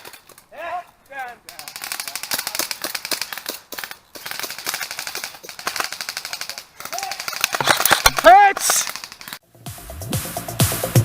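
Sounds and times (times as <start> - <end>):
airsoft guns firing full auto: 1.5 - 9.4.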